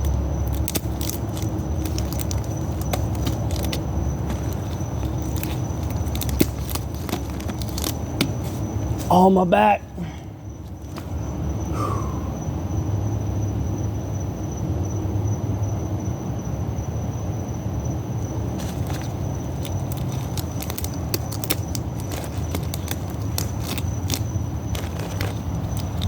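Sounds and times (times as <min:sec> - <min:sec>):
rubber bands snapping: 0:00.0 - 0:09.1, 0:18.6 - 0:26.0.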